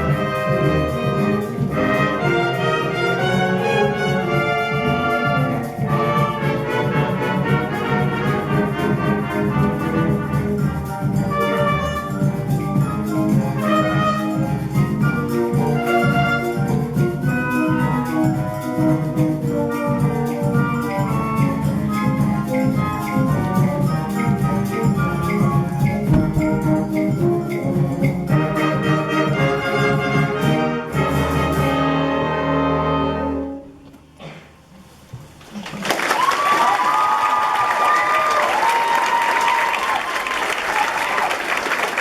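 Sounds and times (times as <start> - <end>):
concert band playing: 0.0 - 33.6.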